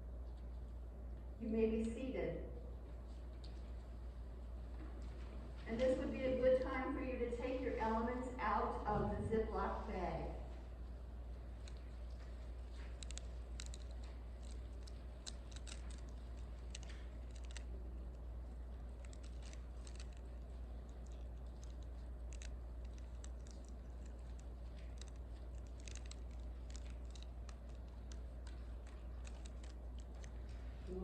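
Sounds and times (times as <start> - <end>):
steady low hum: 0.0 - 31.0
plastic bags crinkling: 11.5 - 31.0.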